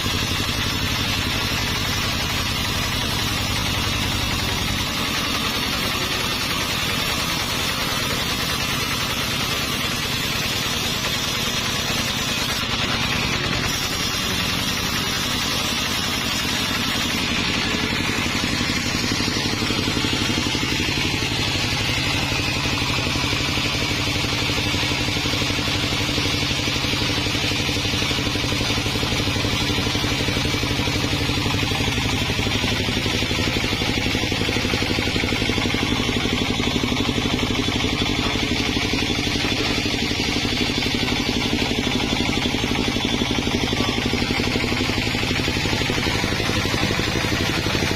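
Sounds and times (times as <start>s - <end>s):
sawmill engine running: 0.0s - 47.9s.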